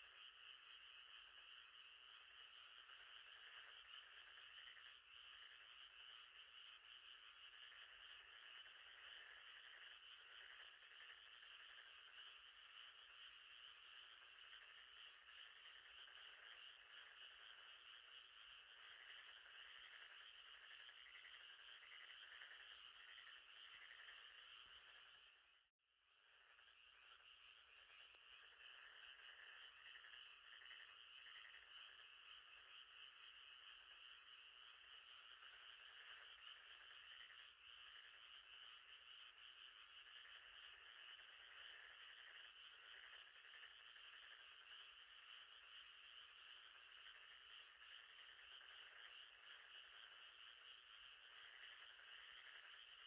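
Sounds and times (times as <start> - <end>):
frogs calling: 0.0 - 25.6, 26.2 - 53.0.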